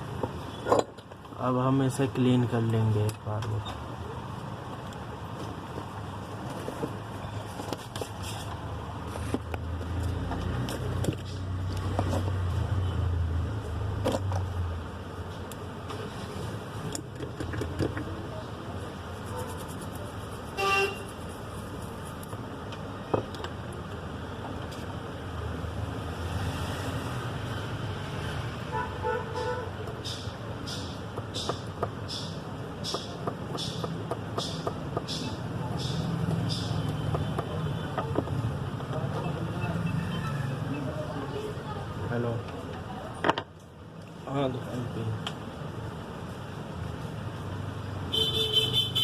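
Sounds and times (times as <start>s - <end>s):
vehicle horn toot: 20.6s - 21.1s, 48.1s - 49.0s.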